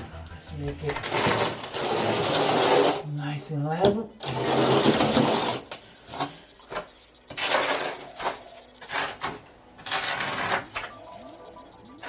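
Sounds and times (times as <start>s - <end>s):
trowel scraping wet mortar: 1.0s - 3.1s, 4.2s - 6.3s, 7.3s - 10.9s.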